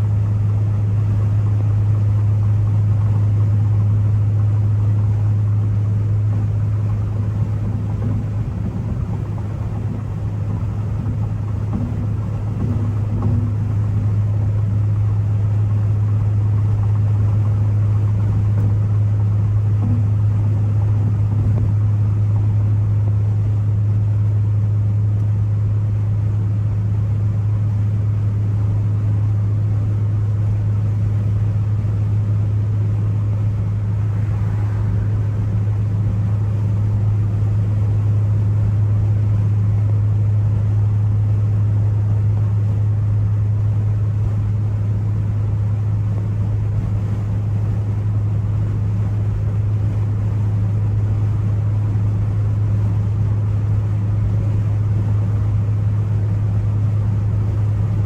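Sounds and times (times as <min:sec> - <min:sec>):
car engine droning: 0:01.0 - 0:24.4, 0:30.4 - 0:41.4
road noise: 0:06.1 - 0:15.5, 0:32.1 - 0:39.1.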